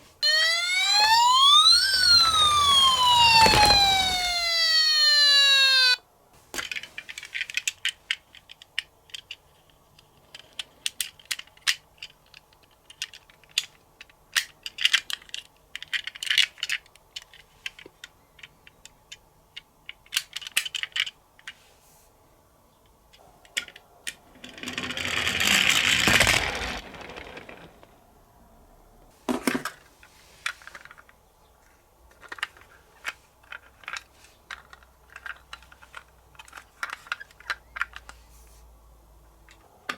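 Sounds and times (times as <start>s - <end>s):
toy siren: 0.2s - 6.0s
toy cars clicking and clattering: 6.6s - 21.6s, 23.4s - 28.0s, 29.3s - 38.3s.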